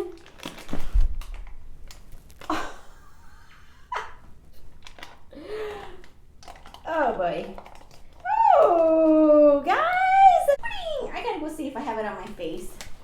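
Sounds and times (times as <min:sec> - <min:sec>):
plastic pouch crinkling: 0:00.0 - 0:02.7.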